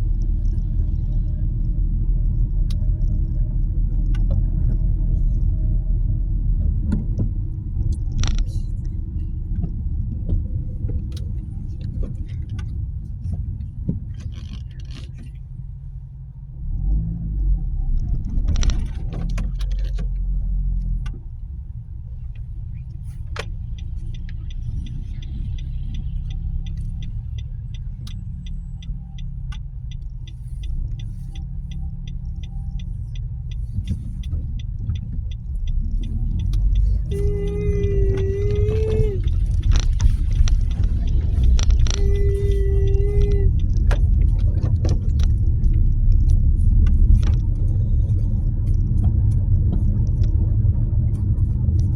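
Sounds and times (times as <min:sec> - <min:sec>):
car engine rumbling: 0:00.0 - 0:51.9
fast regular ticking: 0:23.4 - 0:50.4.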